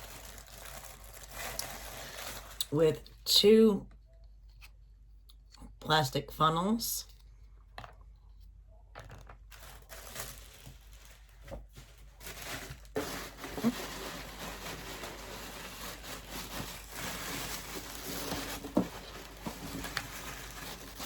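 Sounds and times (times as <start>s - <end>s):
packaging crinkling: 0.0s - 2.8s, 9.0s - 21.0s.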